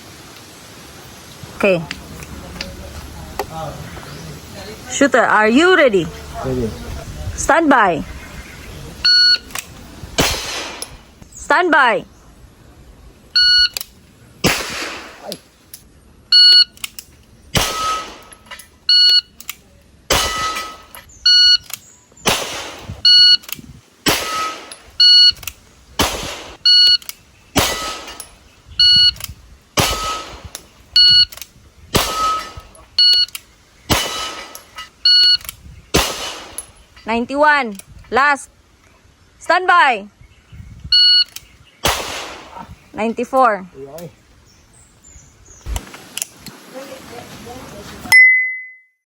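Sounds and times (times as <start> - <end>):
pistol shots: 10.2 - 11.1, 14.4 - 15.4, 17.5 - 18.4, 20.1 - 21.0, 22.2 - 23.0, 24.0 - 24.8, 26.0 - 26.6, 27.6 - 28.3, 29.8 - 30.6, 31.9 - 32.7, 33.9 - 34.7, 35.9 - 36.7, 41.8 - 42.6
steel target plates ringing: 20.1 - 21.1, 29.8 - 30.4, 32.0 - 33.2.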